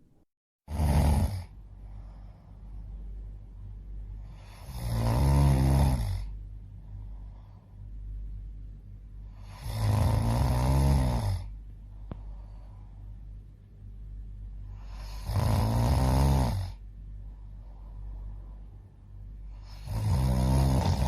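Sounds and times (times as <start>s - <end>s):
person snoring: 0.7s - 2.3s, 4.2s - 6.4s, 9.2s - 11.6s, 14.6s - 16.8s, 19.4s - 21.0s
quiet breathing: 1.2s - 21.0s.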